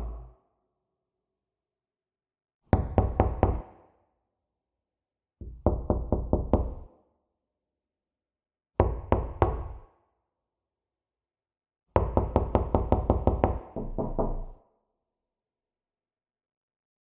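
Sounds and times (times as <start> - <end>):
knocking on a door: 2.8 - 3.7, 5.4 - 6.8, 12.0 - 14.6.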